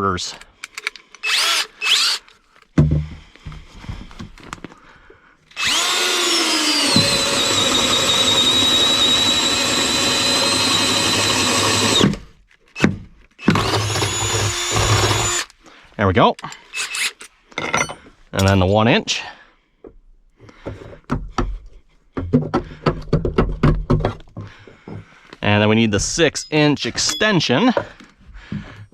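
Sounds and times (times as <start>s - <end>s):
power drill boring wood: 0.7s - 2.3s, 5.5s - 15.5s, 16.7s - 17.2s
knocks: 2.8s - 3.7s.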